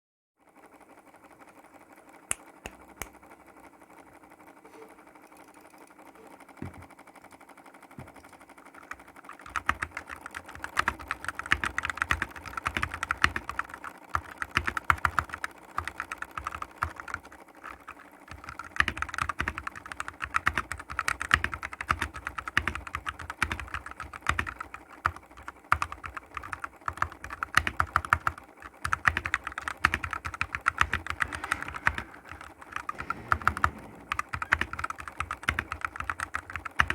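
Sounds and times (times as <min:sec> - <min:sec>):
mechanical keyboard typing: 0:08.0 - 0:36.9.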